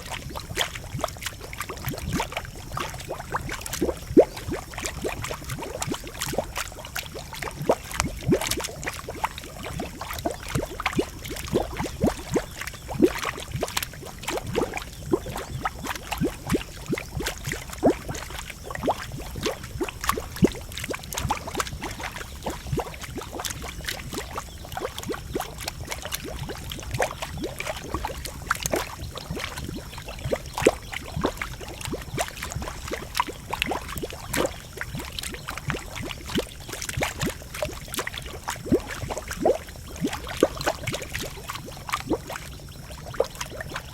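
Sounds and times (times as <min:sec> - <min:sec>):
pool boiling and bubbling: 0:00.0 - 0:43.9.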